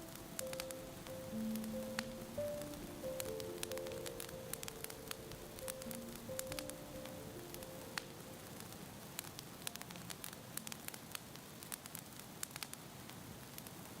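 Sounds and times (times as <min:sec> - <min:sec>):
faint music tones: 0:00.0 - 0:12.2
fire hiss: 0:00.0 - 0:14.0
wood fire crackling and popping: 0:00.0 - 0:14.0.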